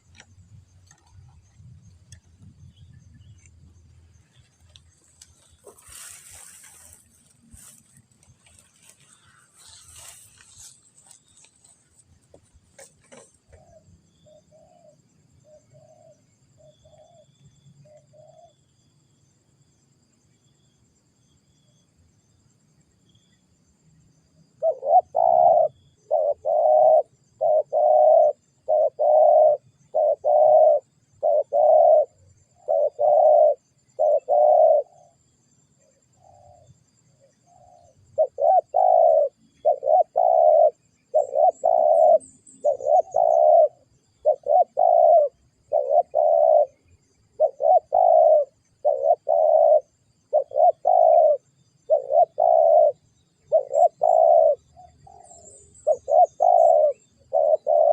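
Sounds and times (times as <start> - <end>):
dove cooing: 24.6 - 35.2, 35.8 - 57.9.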